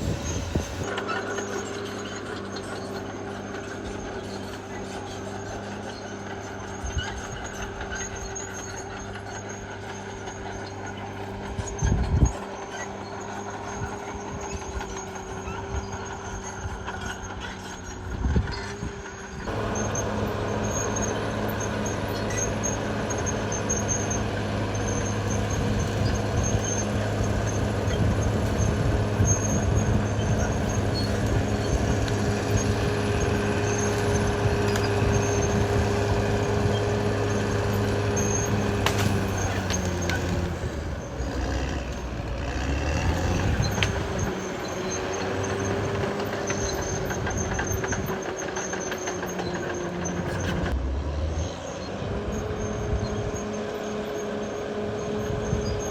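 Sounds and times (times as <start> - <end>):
bulldozer diesel engine running: 0.0 - 55.9.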